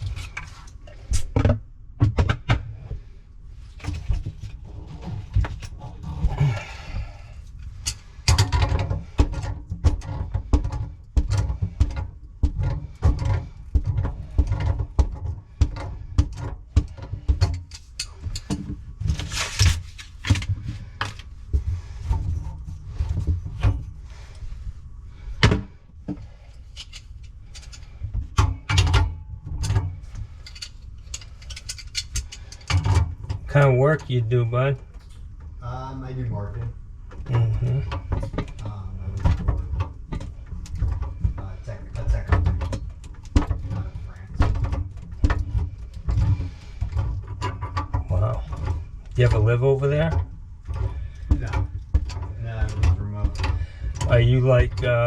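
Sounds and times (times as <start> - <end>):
metal clicks and knocks: 7.6 - 21.3, 25.4 - 33.5.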